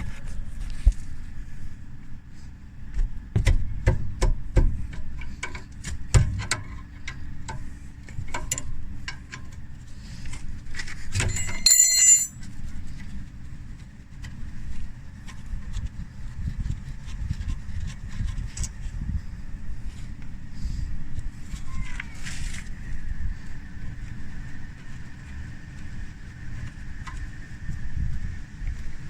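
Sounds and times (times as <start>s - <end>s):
steady low hum: 0.0s - 29.0s
metal tools clicking and knocking: 11.2s - 12.4s
ringing metallic clink: 11.2s - 12.4s.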